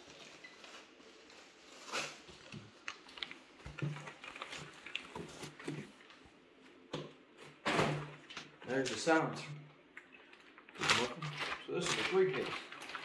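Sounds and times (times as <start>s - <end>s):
packaging rustling: 0.0s - 6.2s, 10.1s - 13.0s.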